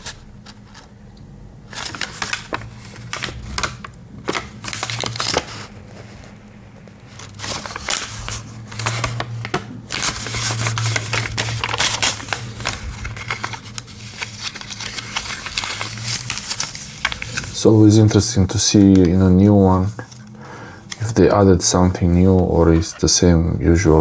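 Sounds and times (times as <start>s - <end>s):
steady low hum: 0.0s - 24.0s
hands handling small objects and paper: 1.7s - 6.4s, 7.1s - 20.3s.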